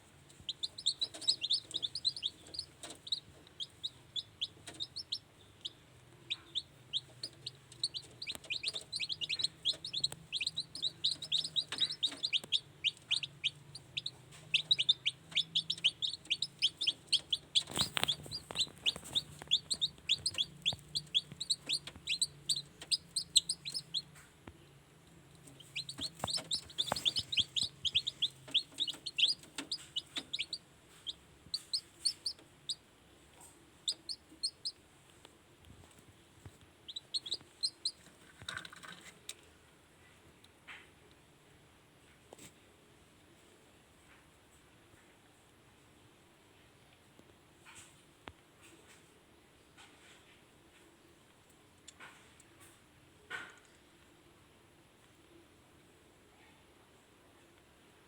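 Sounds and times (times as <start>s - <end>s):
low steady hum: 0.0s - 38.0s
chicks peeping: 0.1s - 24.4s, 25.2s - 39.1s.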